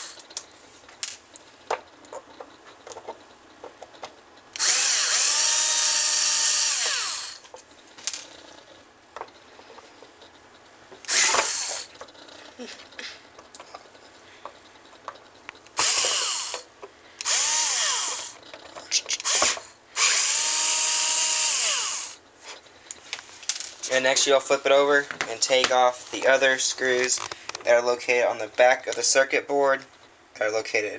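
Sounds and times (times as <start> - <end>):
power drill whining: 4.6 - 7.4, 11.1 - 12.0, 15.8 - 16.6, 17.2 - 18.4, 19.2 - 22.2
small clicks of drill and screws: 4.6 - 7.4, 15.7 - 18.4.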